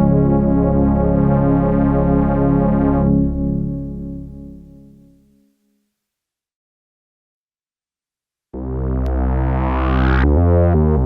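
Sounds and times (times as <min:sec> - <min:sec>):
synthesizer pad chord: 0:00.0 - 0:05.3, 0:08.6 - 0:11.0.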